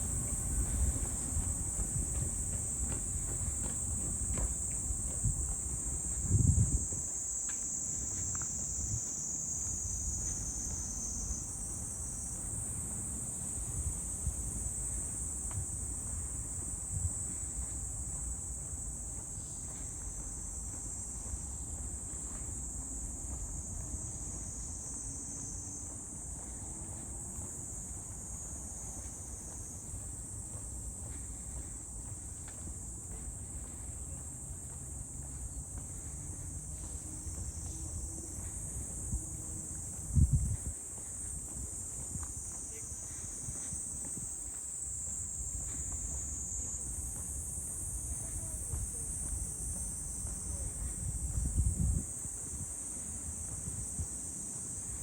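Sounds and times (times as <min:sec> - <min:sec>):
insects chorus: 0:00.0 - 0:55.0.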